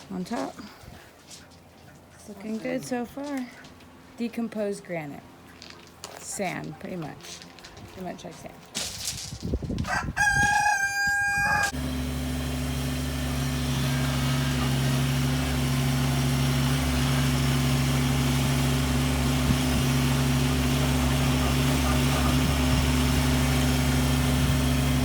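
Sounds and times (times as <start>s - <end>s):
rooster crowing: 9.8s - 11.8s
engine running steadily: 11.6s - 25.0s.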